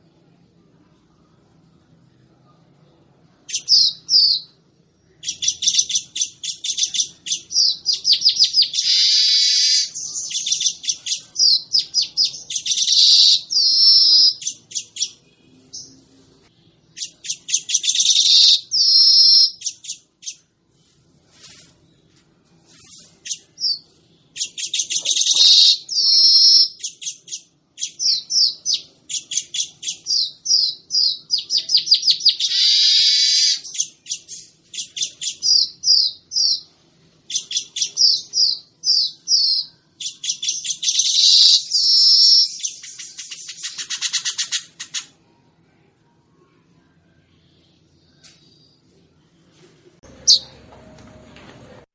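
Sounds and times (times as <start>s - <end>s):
weaver bird chattering song: 5.2s - 15.2s, 24.4s - 36.6s.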